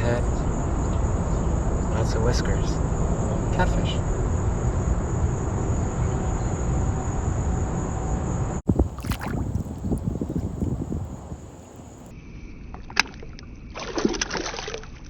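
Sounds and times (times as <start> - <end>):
wind buffeting microphone: 8.6 - 12.1.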